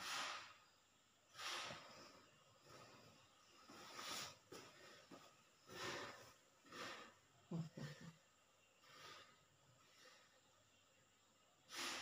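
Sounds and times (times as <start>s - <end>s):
person breathing heavily in sleep: 0.0s - 0.6s, 1.3s - 8.2s, 8.8s - 10.5s, 11.7s - 12.0s.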